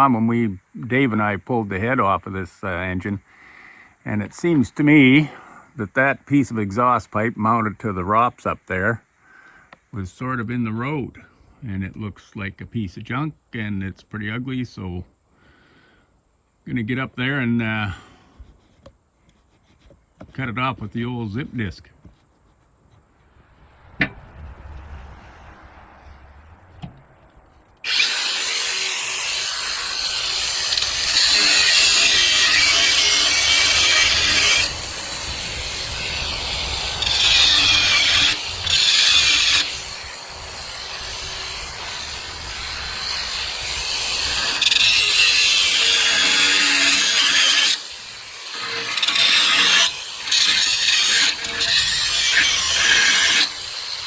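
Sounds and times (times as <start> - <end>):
grinder cutting metal pipe: 27.8 - 54.0.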